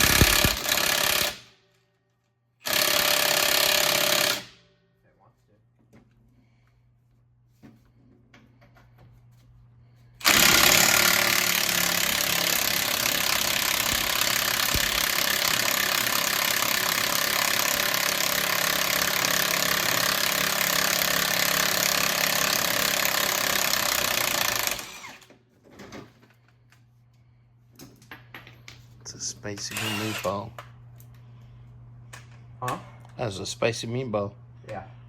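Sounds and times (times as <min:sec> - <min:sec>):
pneumatic impact tool hammering: 0:00.0 - 0:01.6, 0:02.6 - 0:04.6, 0:10.2 - 0:25.3.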